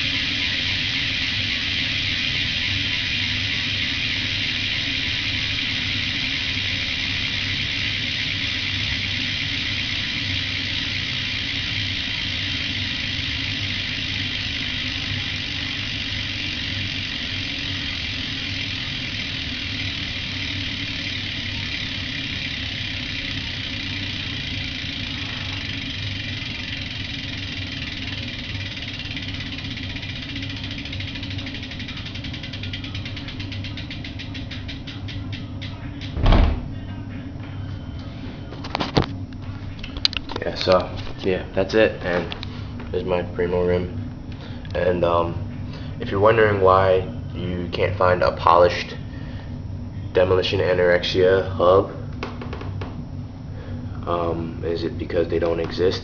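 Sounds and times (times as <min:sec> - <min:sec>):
bicycle hub freewheel ratcheting: 0:00.0 - 0:36.2, 0:40.0 - 0:49.4, 0:50.2 - 0:52.9, 0:54.0 - 0:56.0.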